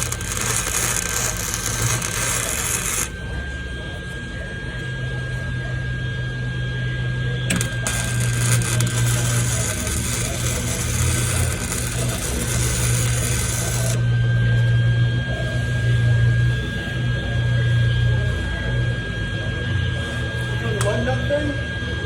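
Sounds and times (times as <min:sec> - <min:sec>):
welding arc crackling: 0:00.0 - 0:03.2, 0:07.5 - 0:14.1
low hum: 0:00.0 - 0:03.3, 0:07.2 - 0:15.3.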